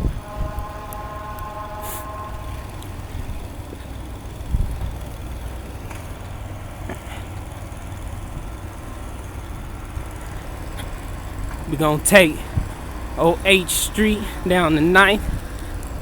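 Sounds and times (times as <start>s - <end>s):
steady pitched tone: 0.0s - 4.4s
motor vehicle rumbling: 0.0s - 13.2s.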